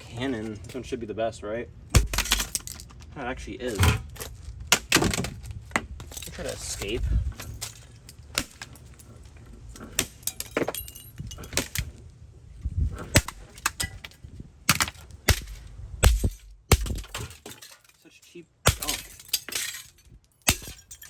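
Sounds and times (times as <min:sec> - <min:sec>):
plastic camera being smashed: 0:01.9 - 0:03.0, 0:03.8 - 0:06.2.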